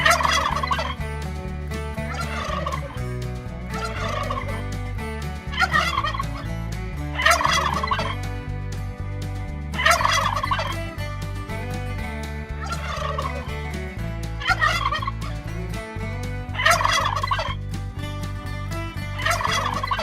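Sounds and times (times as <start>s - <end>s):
turkeys gobbling: 0.0s - 1.0s, 2.1s - 3.0s, 3.7s - 4.5s, 7.2s - 8.1s, 9.8s - 10.8s, 12.6s - 13.5s, 14.4s - 15.1s, 16.6s - 17.5s, 19.2s - 20.0s.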